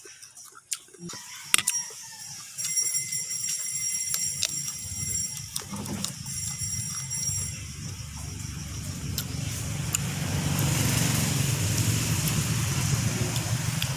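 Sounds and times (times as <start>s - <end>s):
motor vehicle engine rumble: 4.8s - 13.9s.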